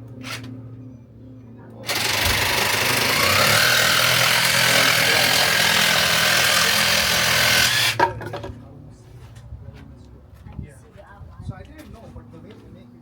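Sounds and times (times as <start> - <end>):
power saw cutting wood: 1.8 - 8.3.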